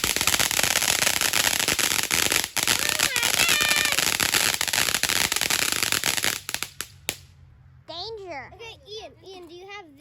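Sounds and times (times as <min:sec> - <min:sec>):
firework crackling: 0:00.0 - 0:07.3.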